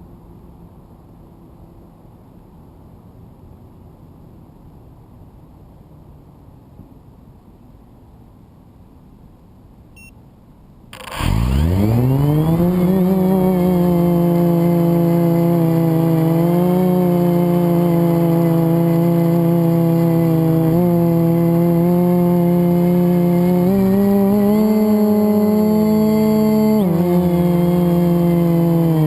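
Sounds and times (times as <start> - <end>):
quadcopter motors whining: 11.0 - 29.0.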